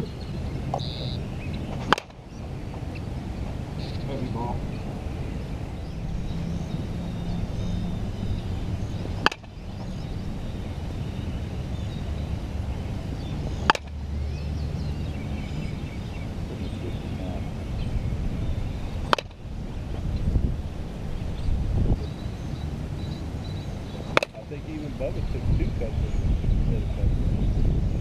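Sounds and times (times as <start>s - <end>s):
low background noise: 0.0s - 28.0s
bat cracking on softball: 1.7s - 2.2s, 9.2s - 9.6s, 13.6s - 14.0s, 19.0s - 19.4s, 24.1s - 24.4s.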